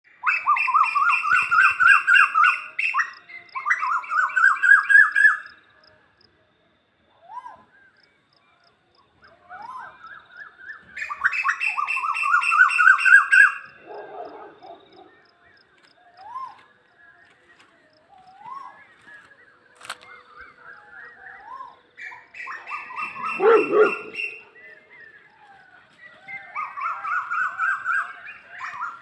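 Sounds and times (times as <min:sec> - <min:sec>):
bird calling rising notes: 0:21.4 - 0:25.1.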